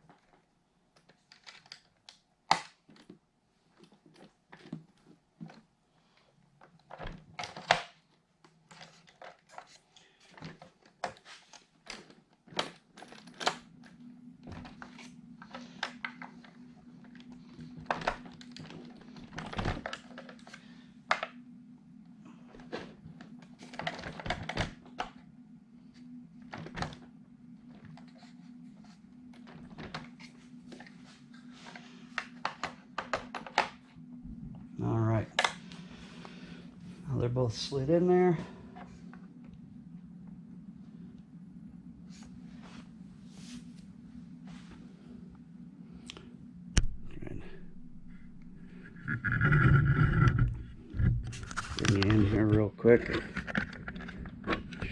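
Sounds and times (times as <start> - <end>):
plastic and metal parts clicking: 1.0 - 3.2
steady low hum: 8.2 - 54.9.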